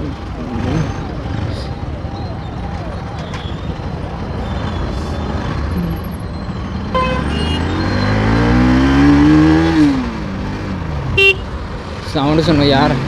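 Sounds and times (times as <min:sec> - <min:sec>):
motorcycle engine pulling away: 0:00.1 - 0:11.0
vehicle horn toot: 0:07.0 - 0:08.1, 0:11.2 - 0:11.5.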